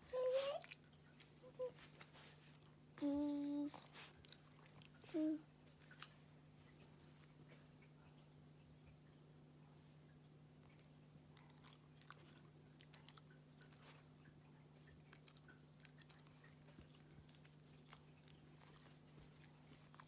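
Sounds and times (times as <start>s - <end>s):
dog chewing clicks: 11.4s - 20.0s.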